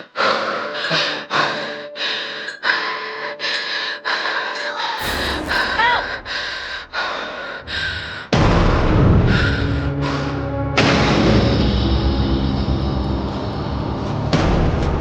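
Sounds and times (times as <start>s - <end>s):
low rumbling drone: 5.0s - 14.3s
tense music: 5.0s - 15.0s.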